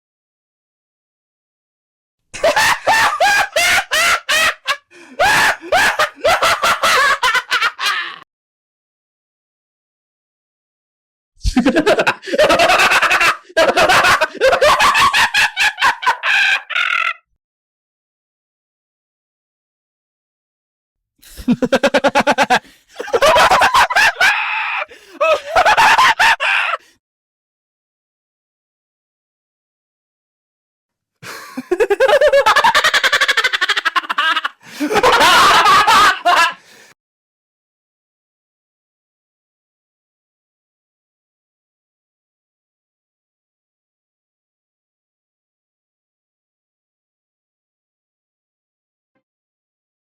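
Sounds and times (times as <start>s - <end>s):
manic evil laugh: 2.4s - 8.2s, 11.5s - 17.3s, 21.2s - 26.8s, 31.2s - 36.6s.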